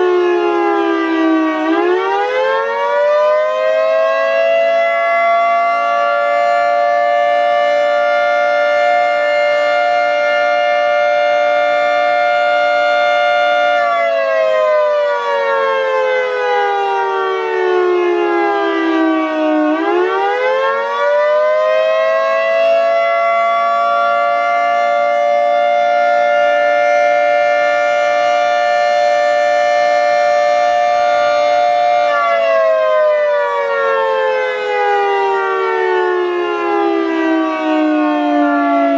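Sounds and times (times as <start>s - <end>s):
two-tone warning siren wailing: 0.0s - 38.9s.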